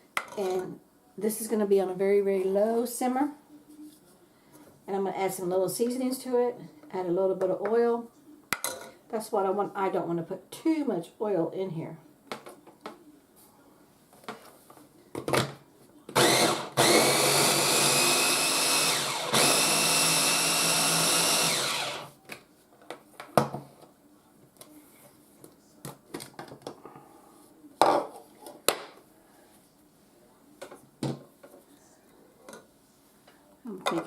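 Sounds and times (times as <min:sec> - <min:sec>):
electric chopper motor whining: 0:16.2 - 0:22.1
knocks and clatters of handling: 0:25.4 - 0:26.8.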